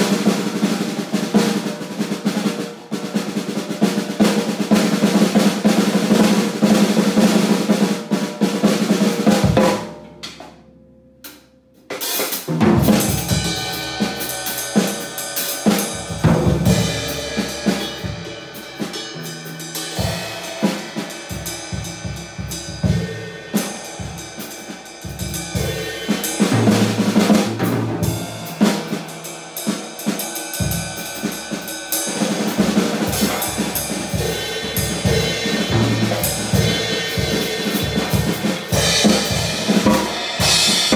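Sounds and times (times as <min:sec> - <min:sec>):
drum kit playing: 0:00.0 - 0:40.9.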